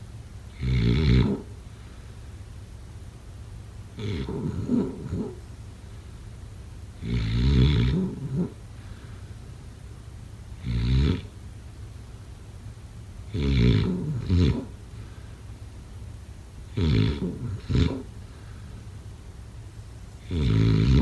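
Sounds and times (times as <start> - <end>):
person snoring: 0.6 - 1.5, 4.0 - 5.4, 7.0 - 8.6, 13.4 - 14.7, 16.8 - 18.1, 20.2 - 21.0.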